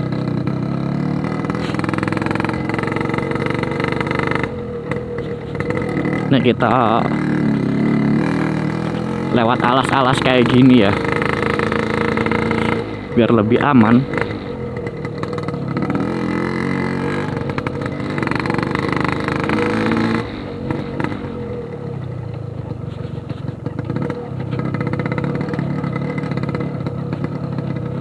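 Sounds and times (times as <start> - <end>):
two-stroke motorcycle engine revving: 0.0 - 28.0.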